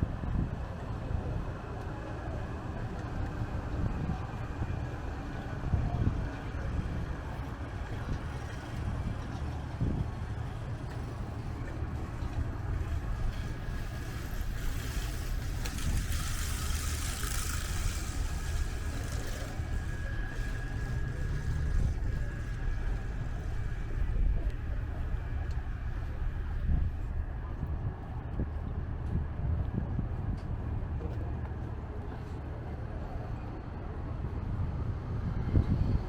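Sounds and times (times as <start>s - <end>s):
traffic rumble: 0.0s - 36.0s
wind rumble: 0.0s - 36.0s.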